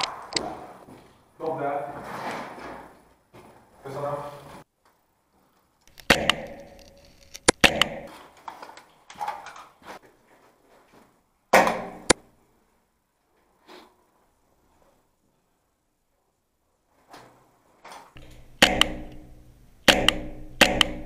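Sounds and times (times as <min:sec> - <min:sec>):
airsoft rifle shots: 0:06.0 - 0:06.8, 0:07.5 - 0:08.1, 0:11.5 - 0:12.2, 0:18.2 - 0:21.0.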